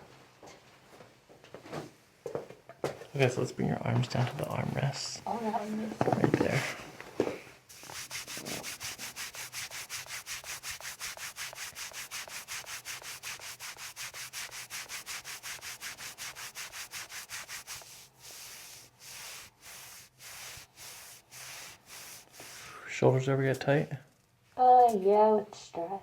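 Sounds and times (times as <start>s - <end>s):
hands rubbing swishing on back: 5.3s - 22.8s.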